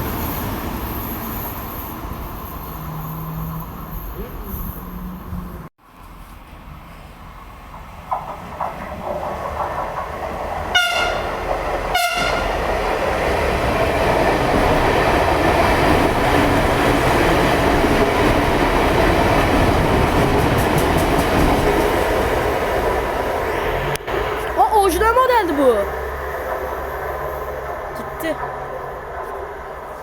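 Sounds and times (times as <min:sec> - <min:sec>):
train wheels rumbling on rails: 0:00.0 - 0:30.0
train horn blasts: 0:10.7 - 0:12.7.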